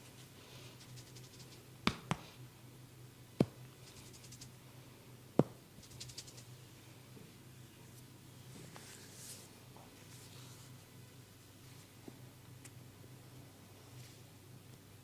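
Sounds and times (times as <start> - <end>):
soft rapid scratching: 0.0 - 1.7, 3.8 - 4.6, 5.8 - 6.6
steady low hum: 0.0 - 15.0.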